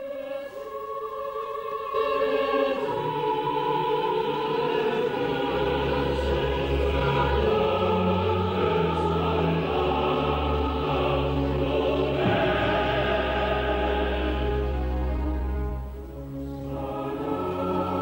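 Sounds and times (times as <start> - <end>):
choir singing held notes: 0.0 - 18.0.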